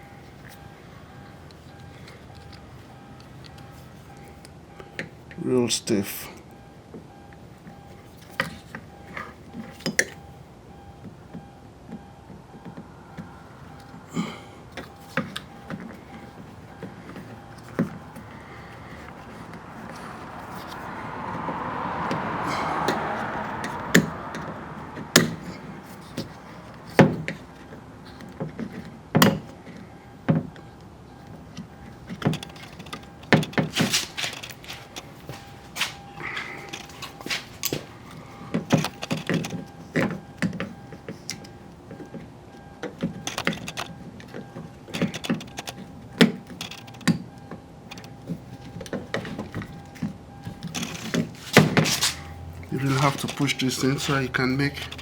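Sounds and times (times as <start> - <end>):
plastic and metal parts clicking: 42.8 - 47.2.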